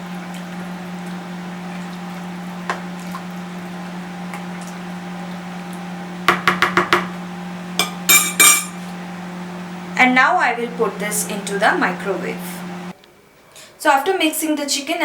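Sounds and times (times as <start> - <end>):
spoon clinking in bowl: 7.8 - 8.8.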